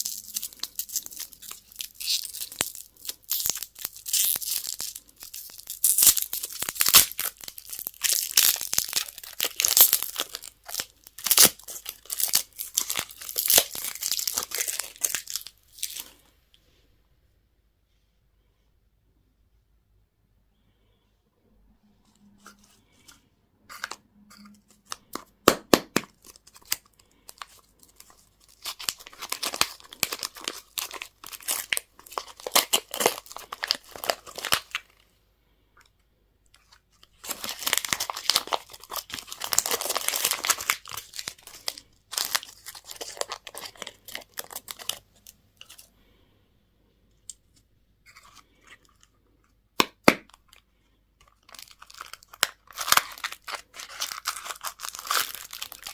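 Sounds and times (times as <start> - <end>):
plastic wrappers crinkling and tearing: 0.0 - 16.2, 22.4 - 35.0, 36.6 - 45.9, 50.1 - 55.9.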